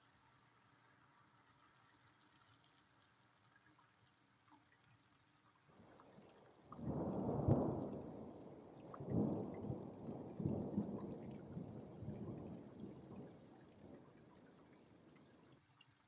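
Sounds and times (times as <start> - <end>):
light rain: 0.0 - 16.0
thunder rumbling: 6.0 - 15.5.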